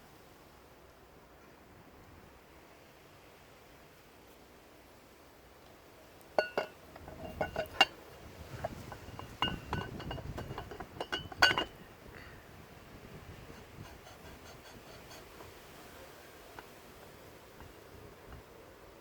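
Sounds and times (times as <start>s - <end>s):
metal clinks and taps: 6.4s - 11.8s.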